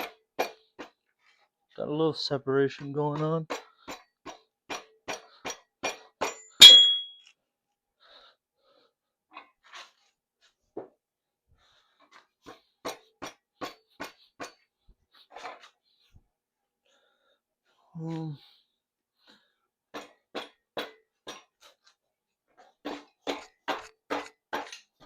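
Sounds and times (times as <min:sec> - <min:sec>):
sharp metallic clink: 0:06.4 - 0:07.2
rubber mallet knocking: 0:06.6 - 0:07.1.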